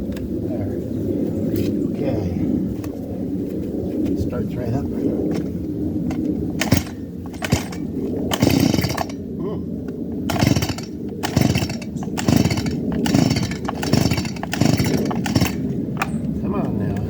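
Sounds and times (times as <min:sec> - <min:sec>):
chainsaw engine turning over: 0:06.1 - 0:09.2, 0:10.3 - 0:16.2
chainsaw starter cord pulls: 0:06.1 - 0:09.2, 0:10.3 - 0:16.1.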